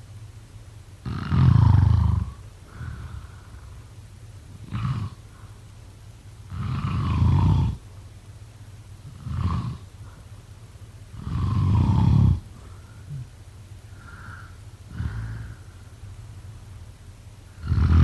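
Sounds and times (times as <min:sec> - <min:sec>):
soft breath: 0:02.7 - 0:03.9, 0:12.5 - 0:16.2
person snoring: 0:11.2 - 0:13.3, 0:14.0 - 0:15.7, 0:17.6 - 0:18.0.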